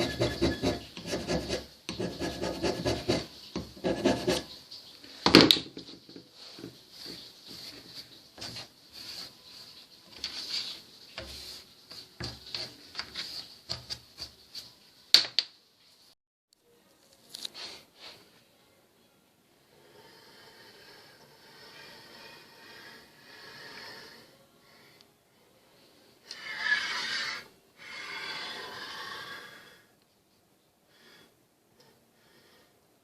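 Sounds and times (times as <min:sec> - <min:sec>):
hand scraper scraping cast iron: 0:00.0 - 0:04.5.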